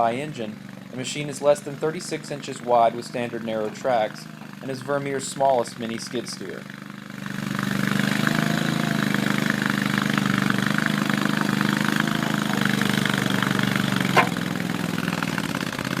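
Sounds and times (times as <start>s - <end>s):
small engine running: 0.0s - 16.0s
sharp knock: 14.2s - 14.4s.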